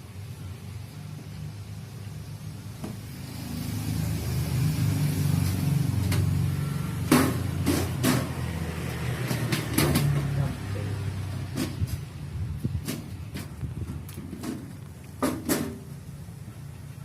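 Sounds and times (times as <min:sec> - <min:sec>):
sharp clicks and knocks: 0:07.0 - 0:08.6, 0:09.2 - 0:10.4, 0:11.3 - 0:15.9.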